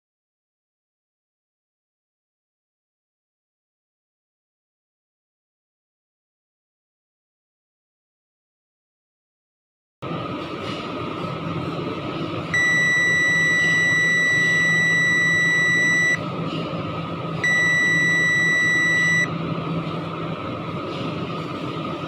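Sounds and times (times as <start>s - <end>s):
steady background hum: 10.0s - 22.0s
long high-pitched electronic beeps: 12.6s - 16.2s, 17.4s - 19.3s.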